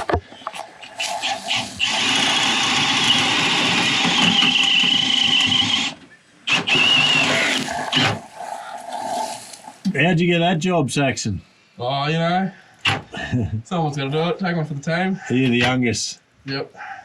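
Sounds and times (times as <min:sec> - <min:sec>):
small motor running: 0:01.0 - 0:08.3.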